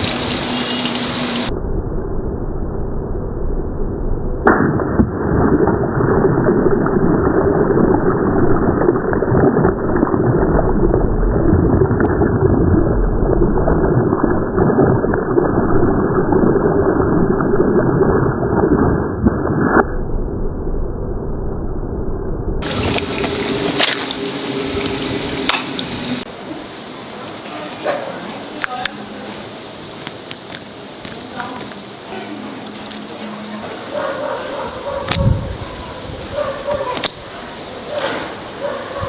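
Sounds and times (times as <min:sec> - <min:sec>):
water running from a tap: 0:00.0 - 0:01.5, 0:22.6 - 0:26.3.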